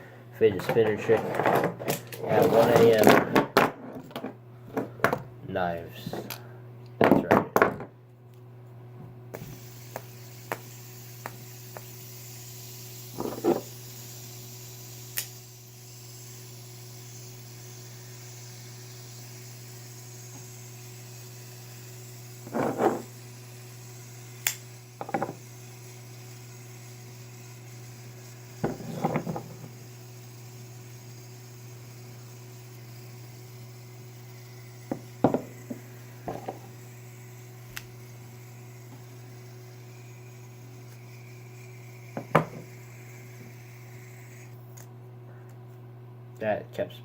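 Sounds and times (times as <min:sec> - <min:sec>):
fidget spinner and knives clattering: 0:09.4 - 0:44.9.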